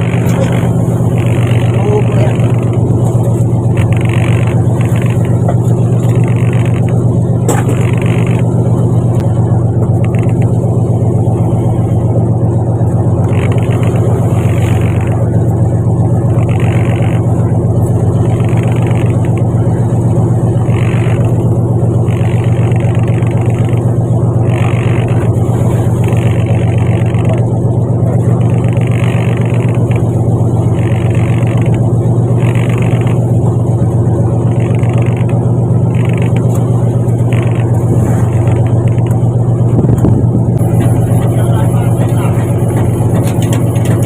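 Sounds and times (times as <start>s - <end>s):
water rushing: 0.0s - 8.4s
boat engine droning: 0.0s - 44.0s.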